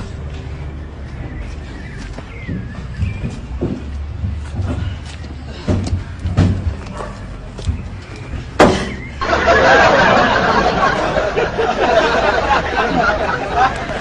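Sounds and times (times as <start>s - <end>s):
knocks and thumps: 2.4s - 5.0s, 5.6s - 6.9s.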